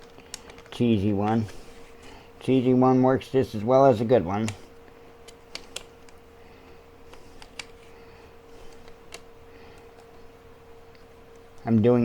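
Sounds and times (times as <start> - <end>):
faint hum: 0.0 - 12.0.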